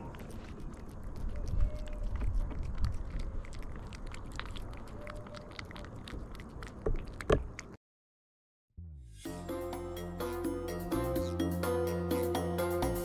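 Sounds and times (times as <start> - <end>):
cat crunching food: 0.0 - 7.8
music: 8.8 - 13.0.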